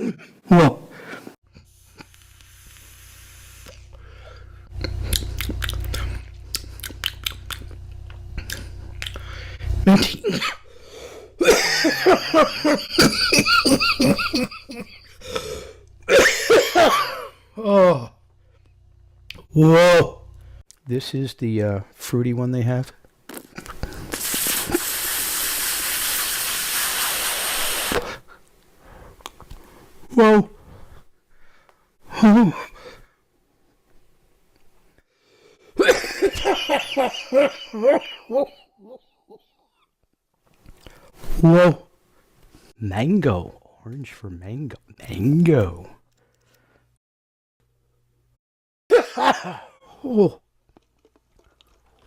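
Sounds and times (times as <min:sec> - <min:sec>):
faint airy hiss: 0:01.6 - 0:04.3, 0:23.8 - 0:31.9
vape coil crackling: 0:02.0 - 0:03.9.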